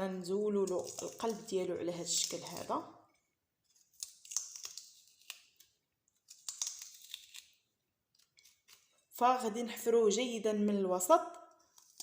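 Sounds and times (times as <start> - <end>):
crisp scraping of turnip: 6.3 - 7.6.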